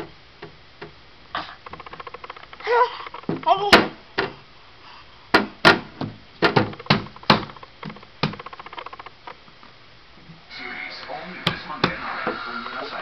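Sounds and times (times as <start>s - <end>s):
sharp knocks on wood: 5.3s - 8.7s.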